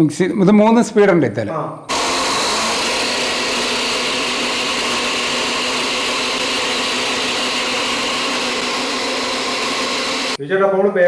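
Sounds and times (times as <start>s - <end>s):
motor whine: 1.9s - 10.4s.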